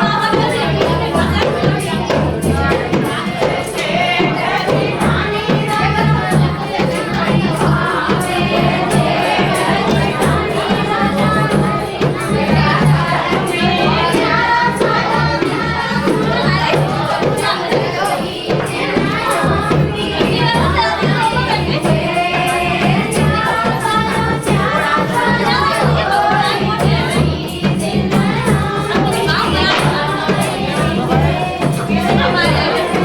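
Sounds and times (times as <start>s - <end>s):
folk song singing: 0.0s - 33.0s.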